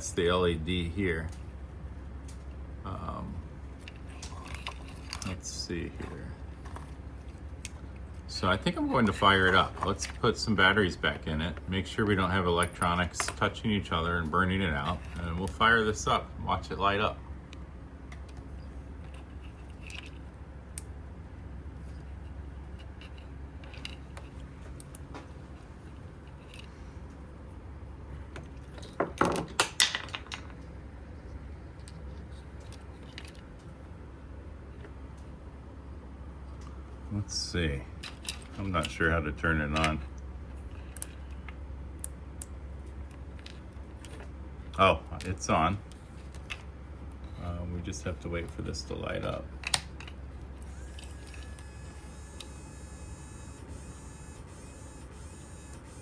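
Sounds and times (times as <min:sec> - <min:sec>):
plastic parts clicking and clattering: 0:03.8 - 0:07.9, 0:22.8 - 0:25.0, 0:28.7 - 0:30.6, 0:38.0 - 0:39.0
small gear motor whirring: 0:50.6 - 0:56.0.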